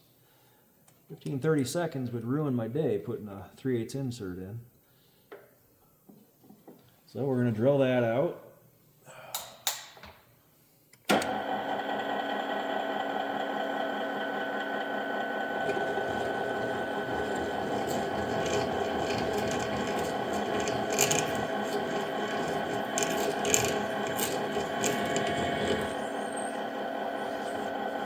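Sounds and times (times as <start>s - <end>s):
machine spindle running: 11.3s - 28.0s
drill cutting ticks and scrapes: 15.6s - 28.0s.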